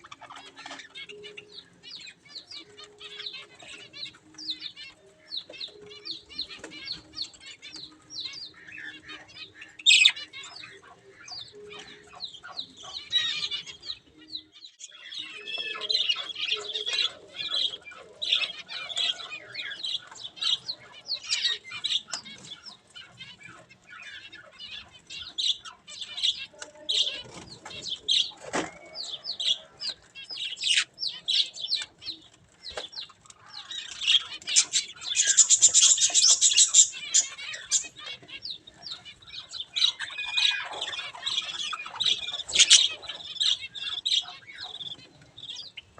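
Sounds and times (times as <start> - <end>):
budgerigars chattering: 0.0 - 45.9.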